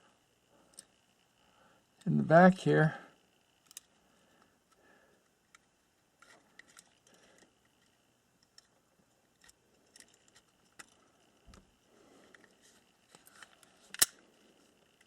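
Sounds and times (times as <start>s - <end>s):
small metal parts clicking: 3.6s - 3.9s, 6.2s - 8.7s, 9.3s - 11.1s.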